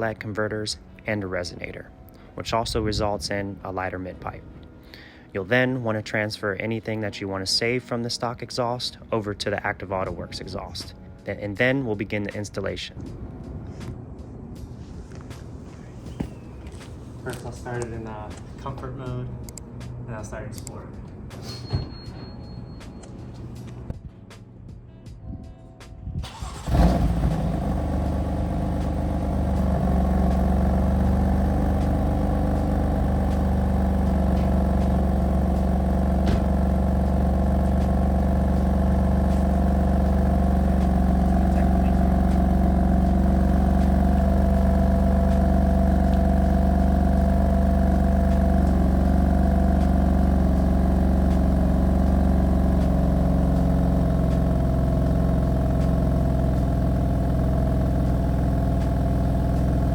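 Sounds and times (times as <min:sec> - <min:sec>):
car engine starting and idling: 0:00.0 - 0:08.2, 0:26.2 - 0:59.9.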